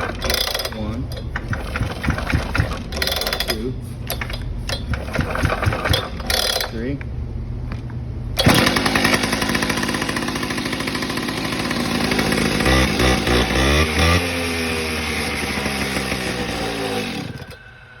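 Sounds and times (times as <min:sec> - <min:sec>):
cut-off saw engine revving: 0:08.4 - 0:18.0.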